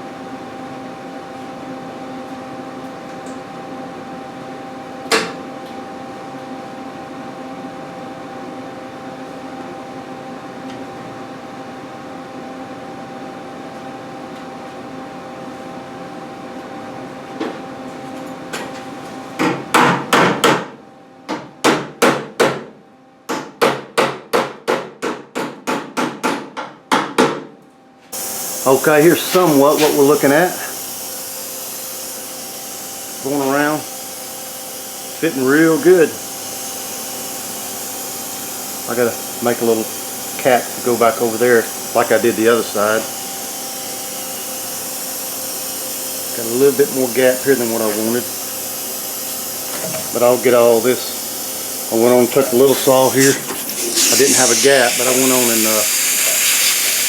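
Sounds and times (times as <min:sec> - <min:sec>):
steady hum: 0:46.2 - 0:56.8.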